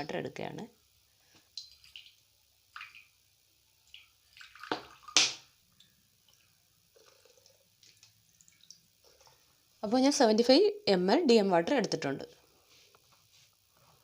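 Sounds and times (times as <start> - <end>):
sharp splash or knock: 4.7 - 5.4
water pouring into a glass: 6.3 - 9.4.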